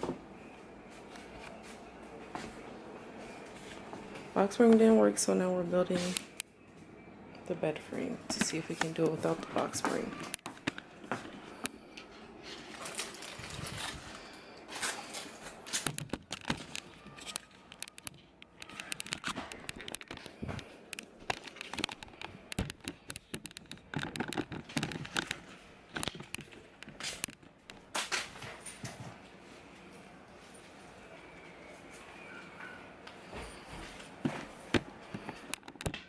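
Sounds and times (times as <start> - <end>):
rustling: 8.9 - 28.4.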